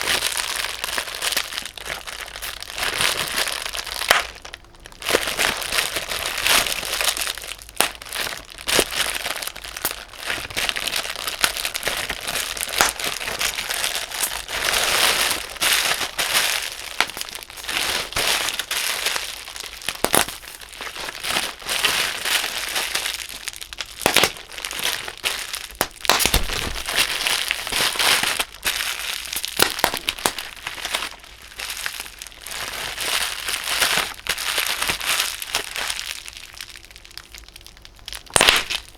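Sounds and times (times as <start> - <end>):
bubble wrap popping: 0.0 - 38.9
plastic crinkling: 0.0 - 38.9.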